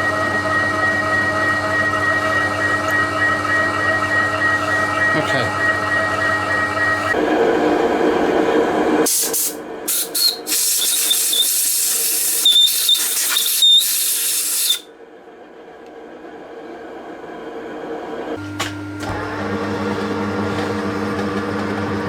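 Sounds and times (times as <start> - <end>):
milling machine hum: 0.0 - 9.0, 15.8 - 22.0.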